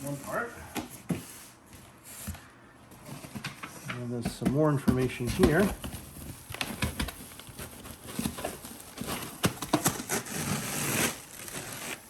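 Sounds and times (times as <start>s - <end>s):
packaging rustling: 3.0s - 12.0s
packaging clicks and knocks: 3.2s - 10.2s.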